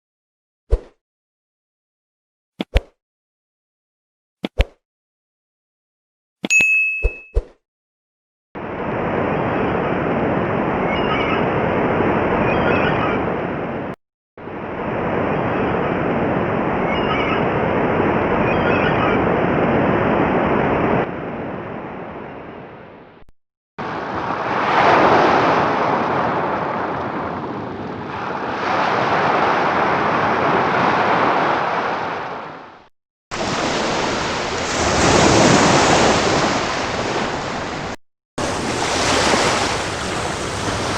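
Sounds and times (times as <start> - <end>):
sea waves: 8.6 - 13.8, 23.8 - 40.9.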